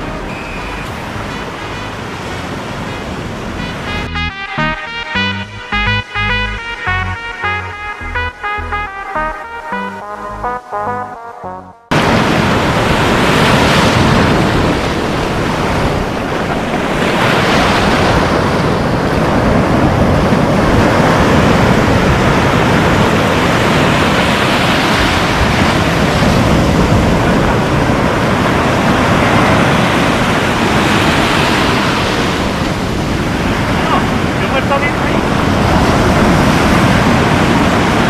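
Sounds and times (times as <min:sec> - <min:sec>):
wind buffeting microphone: 0:12.0 - 0:34.4
surf breaking on beach: 0:12.0 - 0:38.0.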